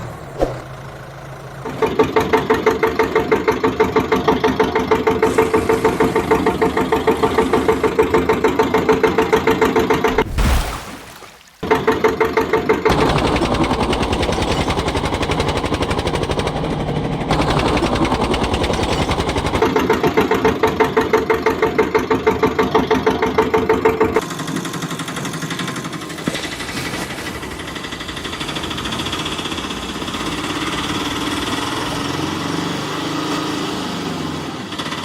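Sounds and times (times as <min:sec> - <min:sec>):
tractor engine chugging: 0:00.0 - 0:10.2, 0:11.6 - 0:26.5.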